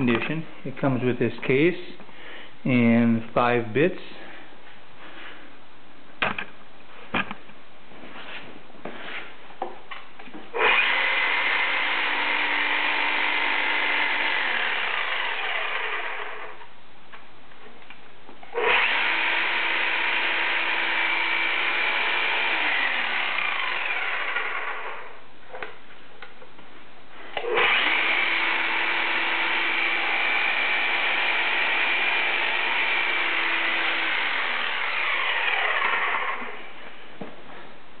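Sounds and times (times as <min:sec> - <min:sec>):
hammer drill whining: 0:10.6 - 0:16.7, 0:18.5 - 0:25.2, 0:27.4 - 0:37.0.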